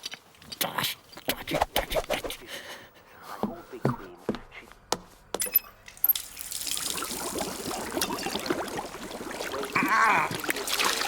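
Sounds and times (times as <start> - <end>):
cartoon water trickling: 6.0 - 11.0.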